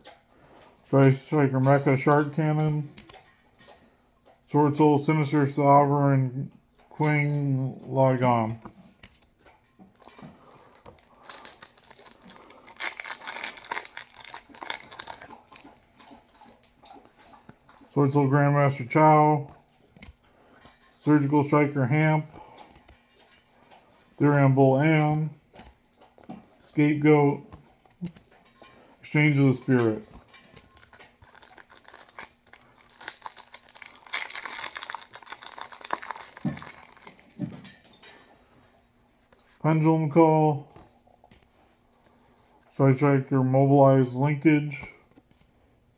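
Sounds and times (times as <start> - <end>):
foil wrapper crackling: 9.9 - 15.8, 30.5 - 37.4.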